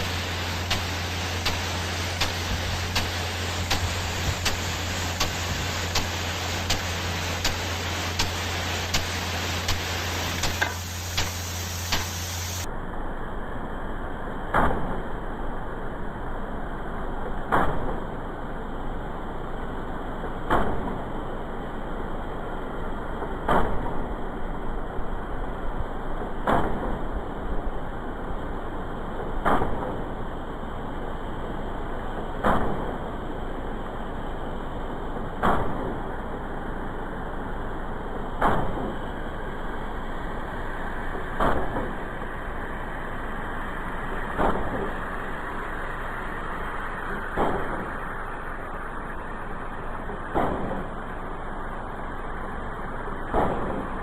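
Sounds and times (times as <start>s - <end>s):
sprinkler arm striking water: 0.0s - 12.7s, 38.4s - 39.1s, 40.7s - 42.2s, 44.2s - 45.4s, 47.1s - 48.5s, 50.3s - 51.0s, 53.3s - 54.0s
sprinkler spray hissing: 0.0s - 12.7s, 38.4s - 51.1s.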